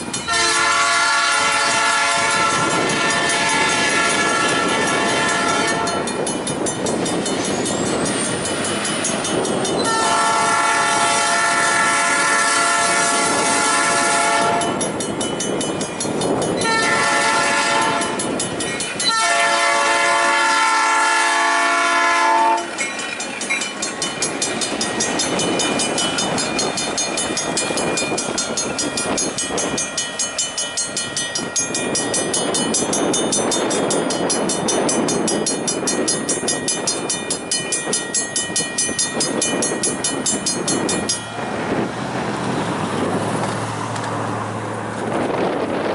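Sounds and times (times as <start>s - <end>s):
locomotive running noise: 0.0s - 45.9s
wheels clicking over rail joints: 0.0s - 45.9s
locomotive horn blasts: 0.3s - 6.1s, 9.8s - 14.9s, 16.6s - 18.2s, 19.1s - 22.8s.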